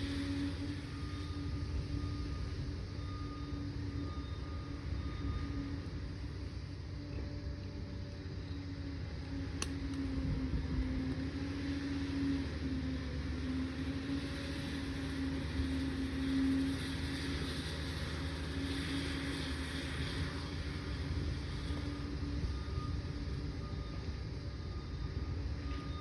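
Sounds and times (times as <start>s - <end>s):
dozer diesel rumble with whine: 0.0s - 26.0s
sharp tick: 9.6s - 10.0s.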